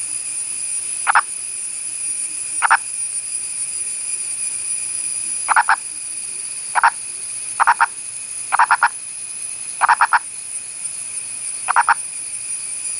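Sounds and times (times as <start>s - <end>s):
frog clucking calls: 1.1s - 1.3s, 2.6s - 2.8s, 5.5s - 5.8s, 6.8s - 7.0s, 7.6s - 9.0s, 9.8s - 10.3s, 11.7s - 12.0s.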